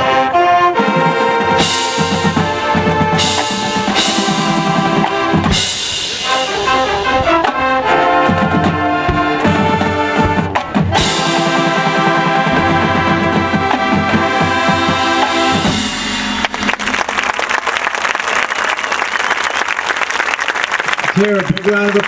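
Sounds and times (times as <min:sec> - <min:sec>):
marching band playing: 0:00.0 - 0:21.0
cymbal crashes: 0:11.0 - 0:18.3.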